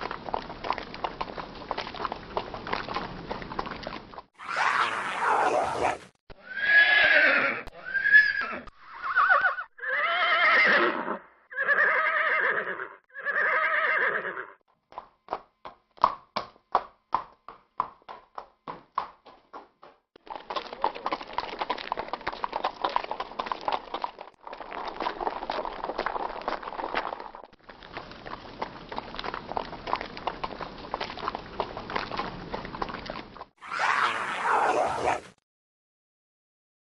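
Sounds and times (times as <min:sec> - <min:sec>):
hooves clip-clopping: 0:00.0 - 0:04.3, 0:14.7 - 0:33.5
horse whinnying: 0:04.4 - 0:14.6, 0:33.6 - 0:35.3.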